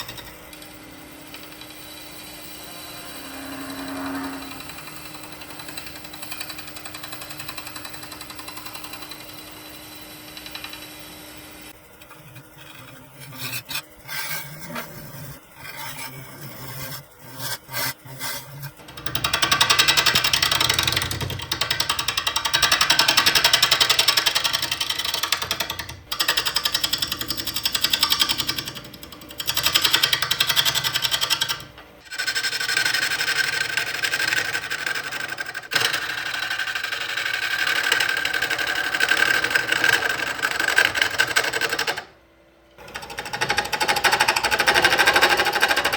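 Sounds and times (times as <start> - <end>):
scattered clicks and knocks: 0.0 - 2.6, 4.5 - 9.5, 18.8 - 42.1, 42.8 - 45.9.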